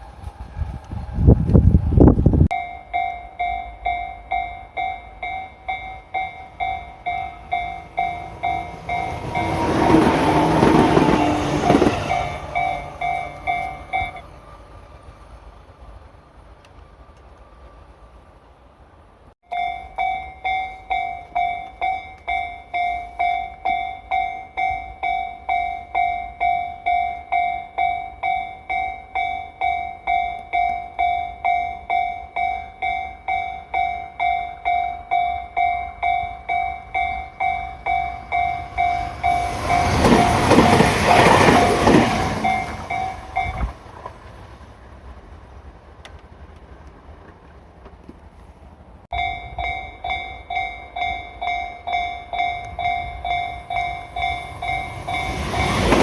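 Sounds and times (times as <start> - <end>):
train passing: 0.0 - 56.0
railroad crossing warning bell: 2.4 - 15.0, 19.4 - 43.8, 49.1 - 56.0.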